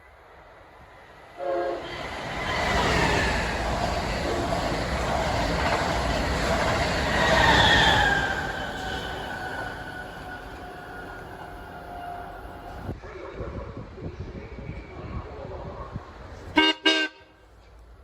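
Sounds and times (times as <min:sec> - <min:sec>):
train wheels rumbling on rail: 0:01.2 - 0:13.0.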